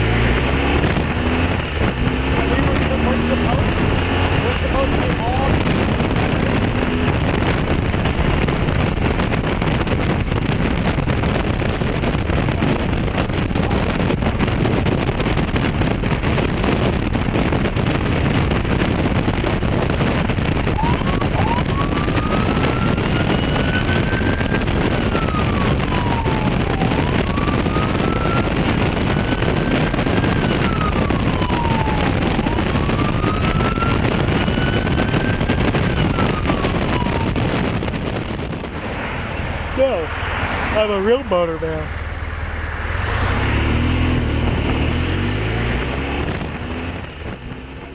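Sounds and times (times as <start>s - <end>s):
wind and road rush: 0.0s - 47.9s
wailing siren: 20.0s - 38.4s.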